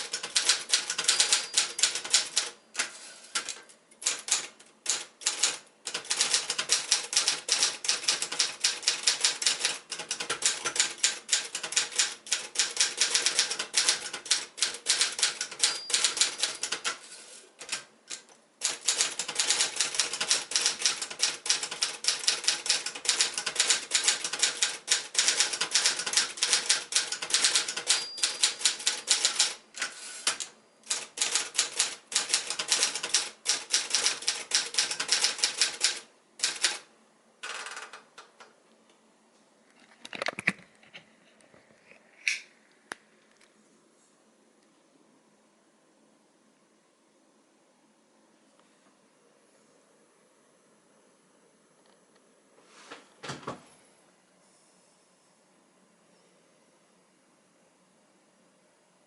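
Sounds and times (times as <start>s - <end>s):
typewriter keystroke clacks: 0.0s - 17.0s, 17.6s - 38.4s.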